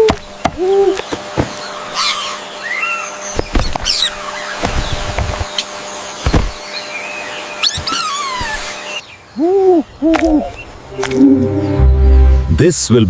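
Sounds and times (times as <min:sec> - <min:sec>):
monkey squeaks and chirps: 0:03.8 - 0:04.2, 0:05.6 - 0:06.3, 0:07.6 - 0:08.8
handling knocks and thumps: 0:06.2 - 0:06.6
monkey hoots: 0:07.6 - 0:08.8.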